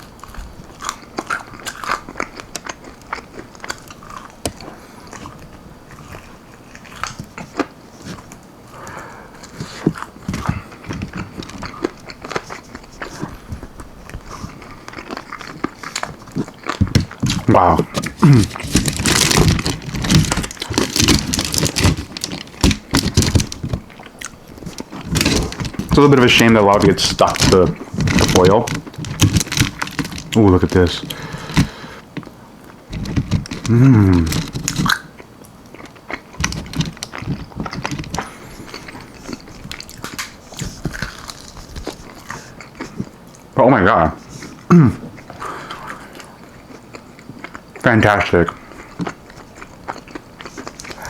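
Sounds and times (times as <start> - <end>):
person chewing crunchy food: 0.0 - 43.6, 44.2 - 51.0
wet smacking: 36.4 - 43.2.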